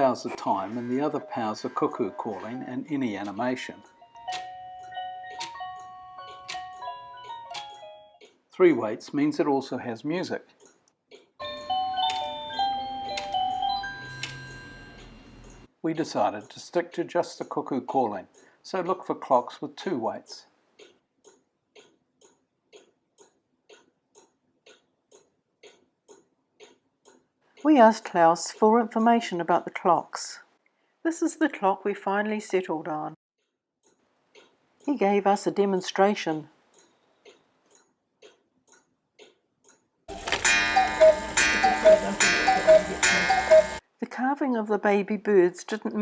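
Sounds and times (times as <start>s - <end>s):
clock pendulum ticking: 0.1s - 8.4s, 10.0s - 19.9s, 20.8s - 29.6s, 35.9s - 43.8s
gong ringing: 40.1s - 43.8s
two-note cuckoo call: 40.1s - 43.8s.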